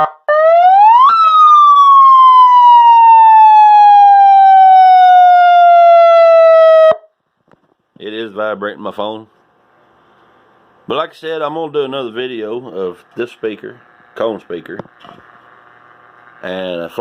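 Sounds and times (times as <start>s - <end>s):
police siren: 0.0s - 7.1s.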